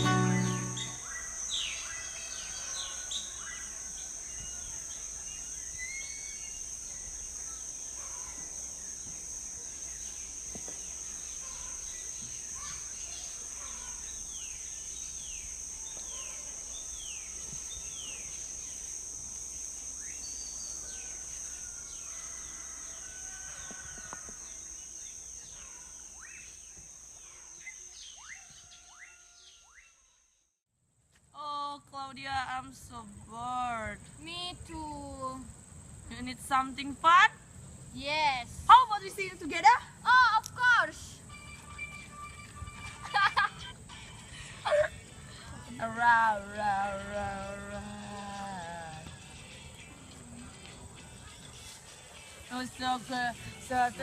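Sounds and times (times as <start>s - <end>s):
high-pitched drone: 0.0s - 1.1s
birds chirping: 0.0s - 2.1s, 41.2s - 45.0s.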